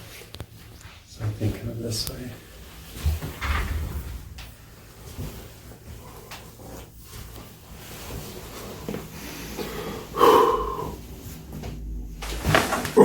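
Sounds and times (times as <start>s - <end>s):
man exhaling groan: 9.6s - 11.0s.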